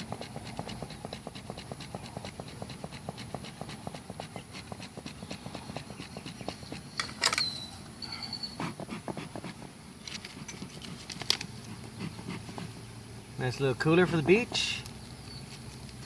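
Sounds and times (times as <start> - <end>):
dog panting: 0.0 - 7.1, 8.1 - 13.0, 13.8 - 14.8.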